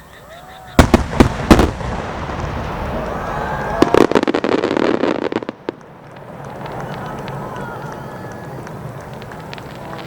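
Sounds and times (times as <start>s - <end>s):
fireworks rumbling echo: 0.7s - 10.0s
rapid crackling pops: 5.1s - 10.0s.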